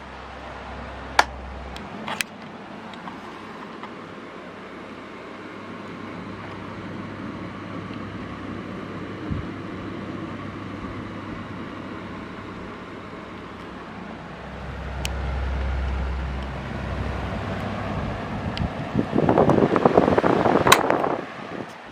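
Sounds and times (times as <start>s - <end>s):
low hum: 0.0s - 3.6s, 12.0s - 21.4s
table fan running: 0.0s - 21.9s
fan switch click: 1.0s - 4.0s, 14.7s - 17.8s, 20.3s - 21.8s.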